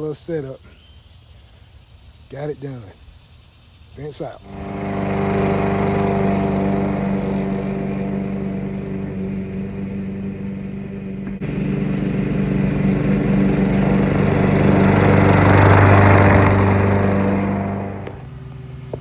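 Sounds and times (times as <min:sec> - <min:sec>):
lawn mower engine running: 0:04.4 - 0:19.0.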